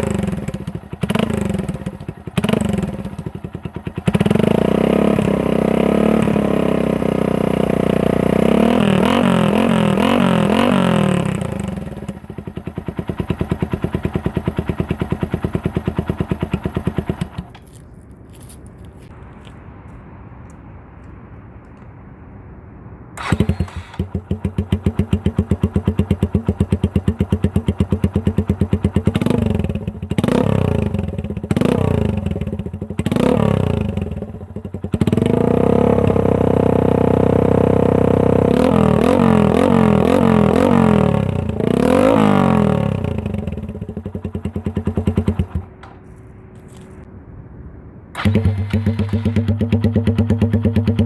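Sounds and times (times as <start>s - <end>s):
motorcycle engine idling and revving: 0.0s - 19.6s, 23.2s - 47.1s, 48.1s - 51.0s.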